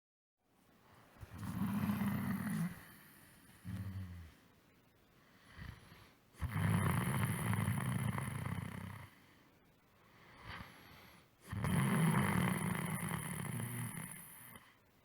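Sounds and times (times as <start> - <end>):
quiet breath out: 0.9 - 6.3, 9.0 - 11.4
person snoring rattling: 1.3 - 2.9, 6.4 - 9.1, 11.5 - 14.6.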